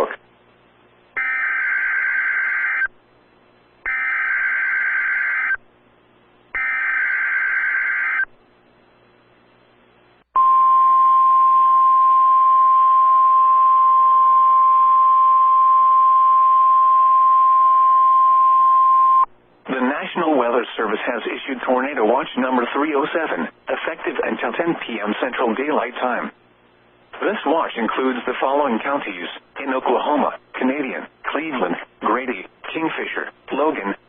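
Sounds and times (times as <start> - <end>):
weather radio alarm tone: 1.2 - 2.9, 3.9 - 5.6, 6.6 - 8.3.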